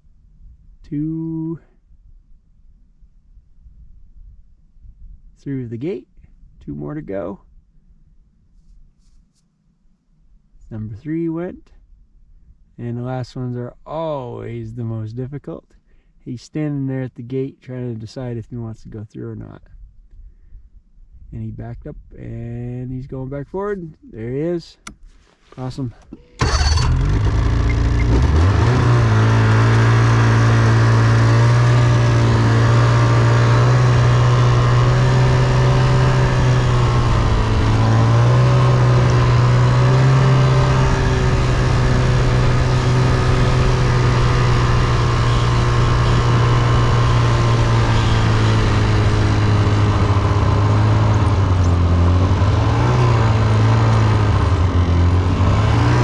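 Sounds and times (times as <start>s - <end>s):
vehicle engine revving: 26.4s - 56.0s.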